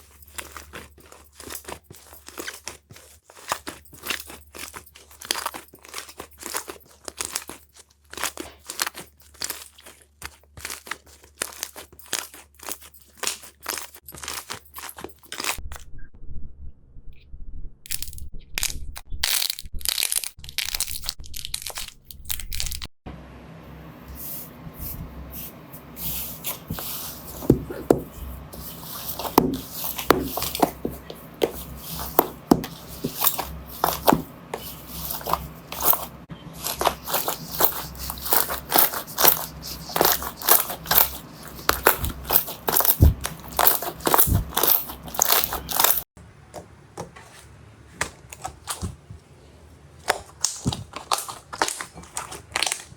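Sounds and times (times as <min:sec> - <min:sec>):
slime crackling and popping: 0:00.0 - 0:15.6, 0:17.9 - 0:22.9, 0:26.6 - 0:46.1, 0:50.1 - 0:52.9.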